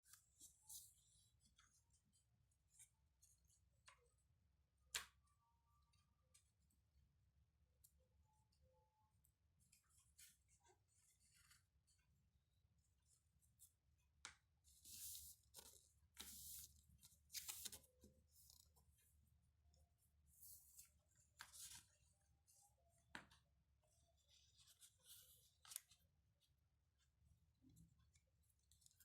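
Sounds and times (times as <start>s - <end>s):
paper rustling and crinkling: 14.8s - 18.8s.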